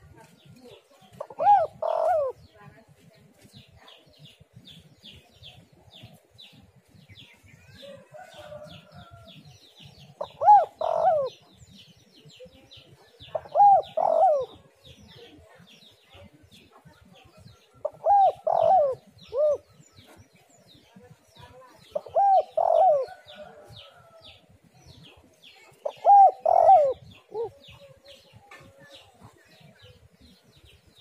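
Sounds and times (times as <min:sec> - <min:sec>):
dove cooing: 0:01.1 - 0:02.4, 0:10.0 - 0:11.8, 0:13.1 - 0:14.9, 0:17.8 - 0:20.1, 0:21.9 - 0:23.6, 0:25.8 - 0:28.0.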